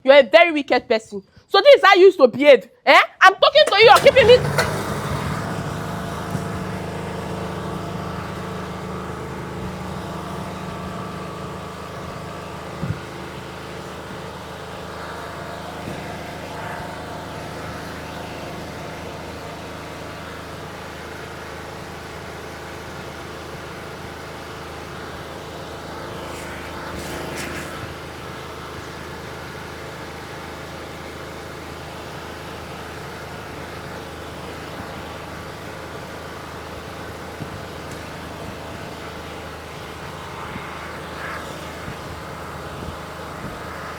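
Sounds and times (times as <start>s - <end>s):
engine-like hum: 3.7s - 43.9s
short noisy rush: 25.6s - 29.3s.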